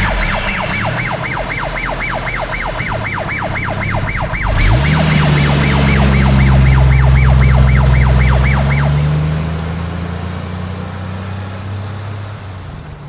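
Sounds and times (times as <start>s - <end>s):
siren yelping: 0.0s - 9.6s
low engine hum: 0.0s - 13.0s.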